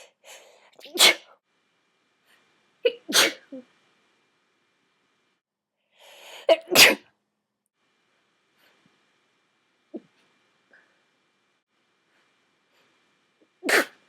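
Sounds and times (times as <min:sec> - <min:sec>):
woman sneezing: 0:00.8 - 0:01.3, 0:02.9 - 0:03.6, 0:06.5 - 0:07.1, 0:13.7 - 0:14.0.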